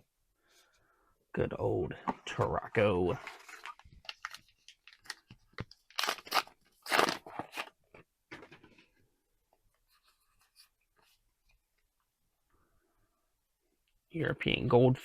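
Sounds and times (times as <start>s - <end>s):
plastic packaging crinkling: 3.2s - 7.8s.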